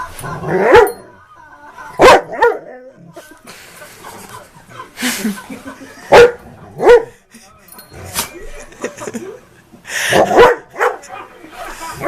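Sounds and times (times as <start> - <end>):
dog barking: 0.6 - 1.0, 2.0 - 2.7, 6.1 - 7.1, 10.1 - 11.3.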